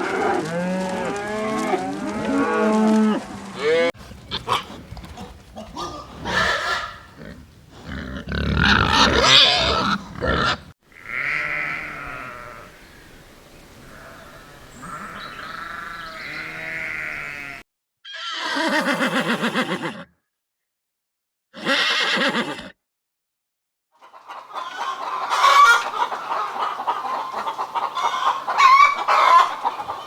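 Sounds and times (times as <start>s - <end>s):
rough animal calls: 0.0s - 12.7s
sheep bleating: 7.8s - 12.7s, 13.9s - 18.4s
horse whinnying: 8.0s - 10.7s, 18.1s - 20.0s, 21.6s - 22.6s.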